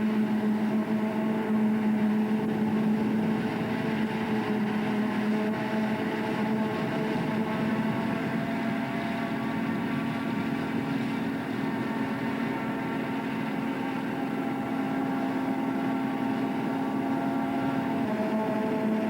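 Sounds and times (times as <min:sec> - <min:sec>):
harvester machine drone: 0:00.0 - 0:19.0.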